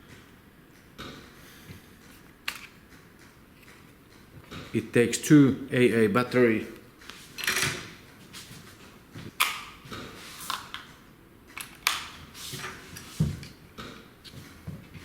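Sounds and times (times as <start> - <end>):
plastic clicks: 10.5 - 12.2.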